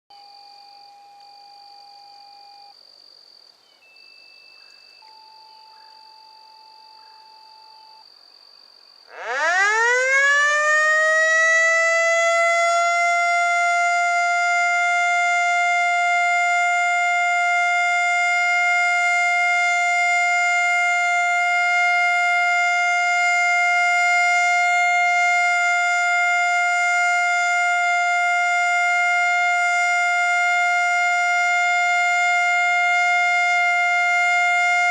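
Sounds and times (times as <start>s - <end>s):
fire siren winding up: 9.1s - 20.8s, 32.6s - 34.9s.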